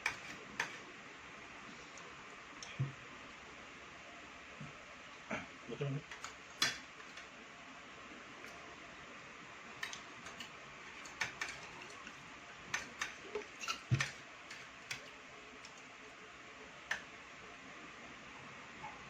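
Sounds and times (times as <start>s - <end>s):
cutlery clinking on plates: 9.8s - 12.0s.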